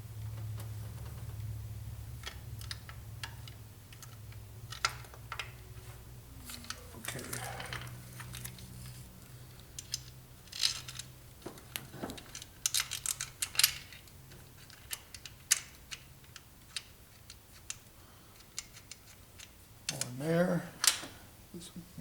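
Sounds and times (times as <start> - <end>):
metal tools clinking and rattling: 6.4 - 8.6.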